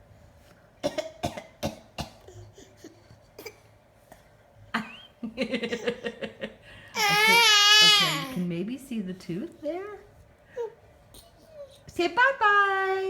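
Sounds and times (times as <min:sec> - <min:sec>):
baby fake coughing: 0:00.8 - 0:02.7, 0:03.4 - 0:03.7.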